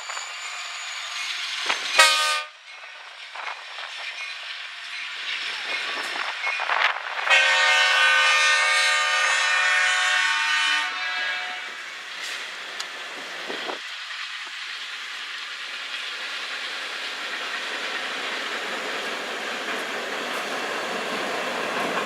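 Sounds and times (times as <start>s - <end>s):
train rolling: 0.0s - 22.0s
locomotive air horn: 2.0s - 2.6s, 7.3s - 11.8s.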